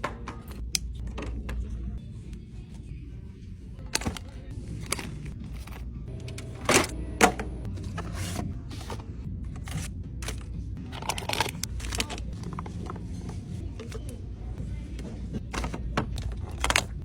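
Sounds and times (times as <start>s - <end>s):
steady low hum: 1.7s - 15.5s
household items clicking and knocking: 9.6s - 14.1s, 15.3s - 17.0s.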